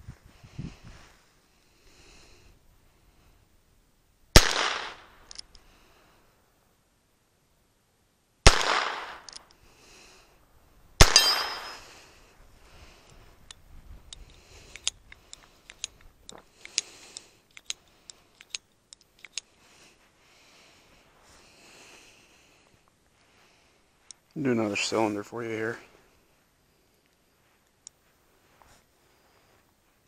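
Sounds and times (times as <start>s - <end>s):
light metallic clicks of revolver cylinder: 4.5s - 5.7s, 8.7s - 9.6s, 13.0s - 19.6s
revolver shots with ringing tail: 11.0s - 11.9s.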